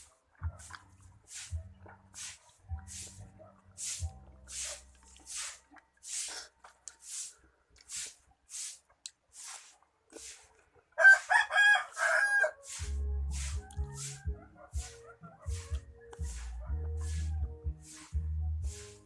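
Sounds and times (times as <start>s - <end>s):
rooster crowing: 11.0s - 12.6s.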